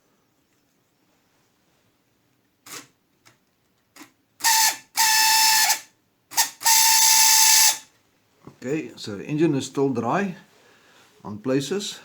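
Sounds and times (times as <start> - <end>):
toy electric motor whirring: 2.6 - 2.9, 4.4 - 7.8.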